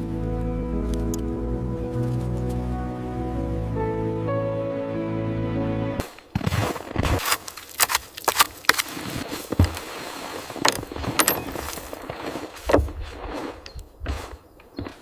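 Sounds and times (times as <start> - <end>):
handling clicks and rustling: 10.6 - 12.9.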